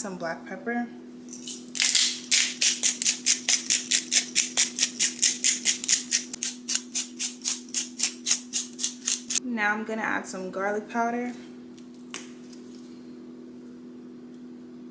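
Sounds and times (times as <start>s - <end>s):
pepper grinder rasping: 1.4s - 9.4s.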